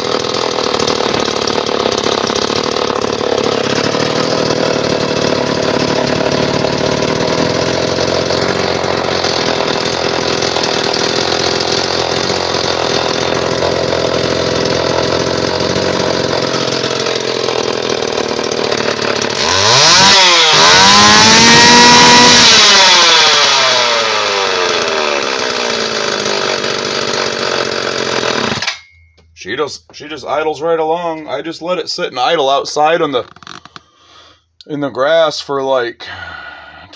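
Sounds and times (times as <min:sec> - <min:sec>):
chainsaw idling and revving: 0:00.0 - 0:28.8.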